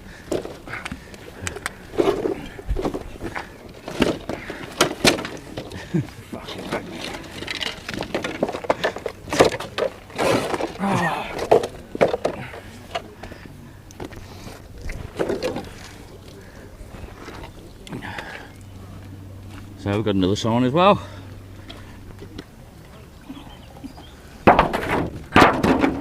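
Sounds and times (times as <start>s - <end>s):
indistinct voices: 0.0s - 26.0s
sharp knocks and clatters: 24.4s - 26.0s.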